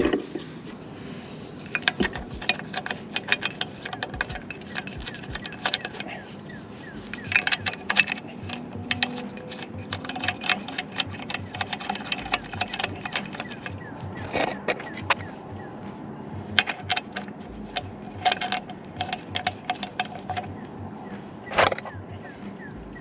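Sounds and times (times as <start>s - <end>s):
metallic clinking of hand tools: 0.0s - 13.7s.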